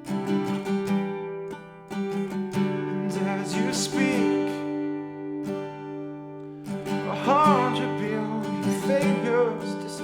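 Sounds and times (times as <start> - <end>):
acoustic guitar strumming chords: 0.0 - 10.0
person singing: 2.9 - 4.8, 7.0 - 10.0.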